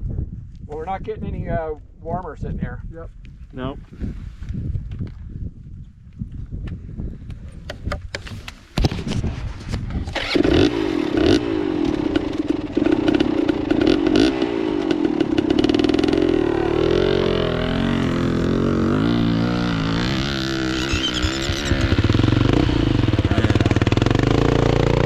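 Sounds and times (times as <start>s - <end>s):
dirt bike engine revving: 10.1s - 25.0s.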